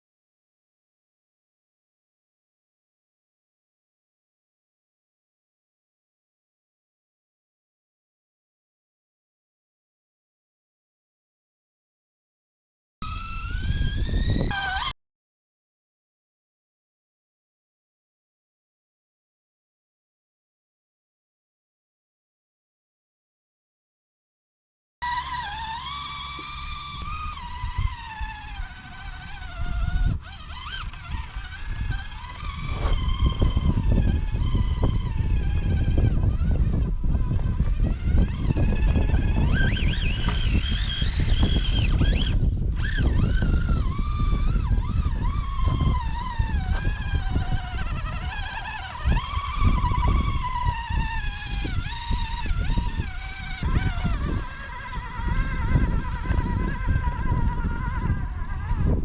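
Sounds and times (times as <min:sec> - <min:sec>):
toy car motor whine: 0:13.0 - 0:15.0, 0:25.0 - 0:59.0.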